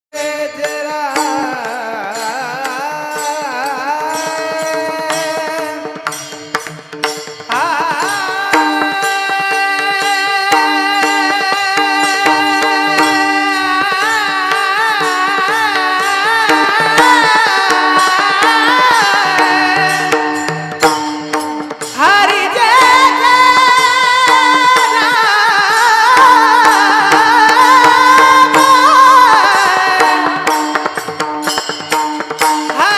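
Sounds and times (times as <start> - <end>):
man singing devotional melody: 0.1 - 32.9
light percussion: 0.2 - 32.9.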